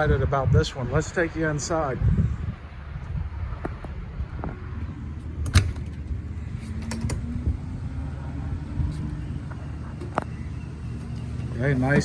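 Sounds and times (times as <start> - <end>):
low steady hum: 2.2 - 12.0
door clicks and knocks: 5.4 - 6.2.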